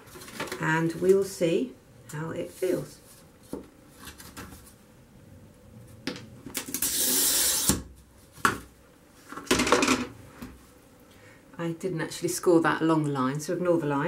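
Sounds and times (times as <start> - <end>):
glass cutter scoring glass: 6.7 - 7.8.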